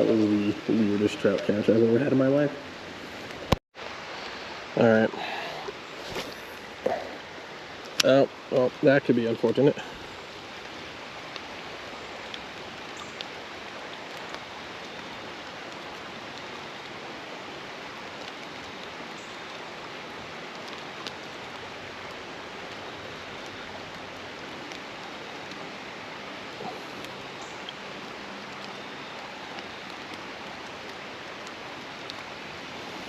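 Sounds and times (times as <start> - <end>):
creek water running: 0.0 - 33.0.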